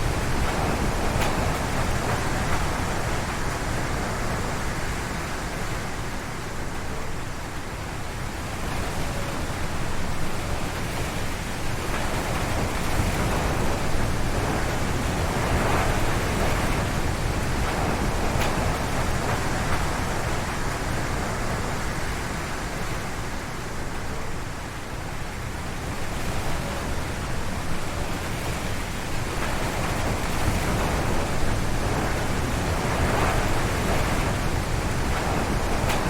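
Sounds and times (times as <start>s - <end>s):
strong wind gusting through trees: 0.0s - 36.0s.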